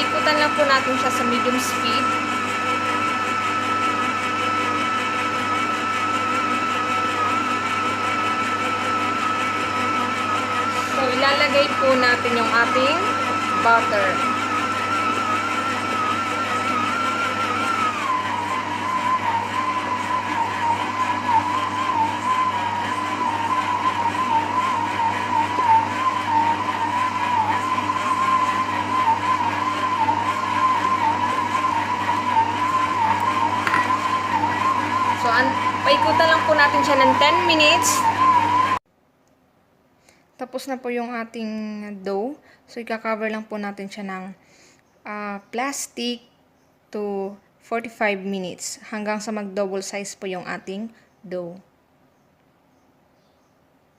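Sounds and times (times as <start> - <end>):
stand mixer motor whining: 0.0 - 38.8.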